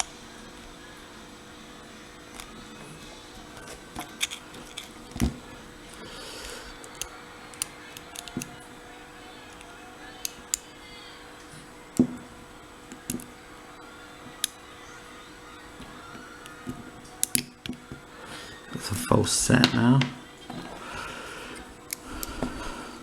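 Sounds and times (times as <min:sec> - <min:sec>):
lock pick metallic clicks: 0:06.9 - 0:08.6.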